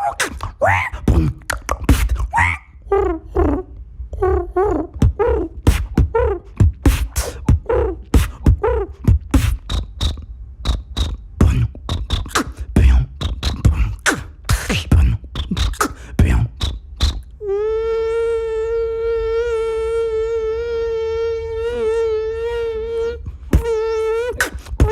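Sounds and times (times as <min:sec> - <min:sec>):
warbling squawk-like vocal calls: 0:00.0 - 0:01.0, 0:01.9 - 0:03.6
beatboxing beat: 0:00.0 - 0:17.3, 0:18.3 - 0:24.9
hummed buzz: 0:00.0 - 0:24.9.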